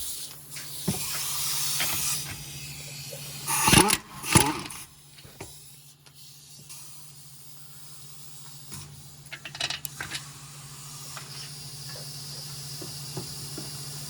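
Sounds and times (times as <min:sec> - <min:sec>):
metallic clank: 0:03.5 - 0:04.8.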